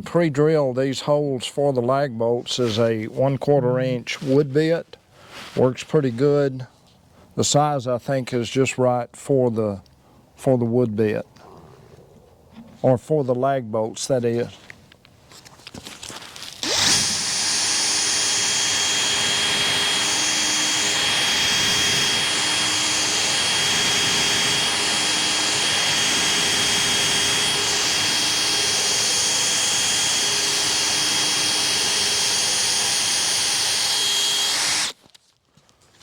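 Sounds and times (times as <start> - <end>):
power drill boring into wood: 16.5 - 35.0.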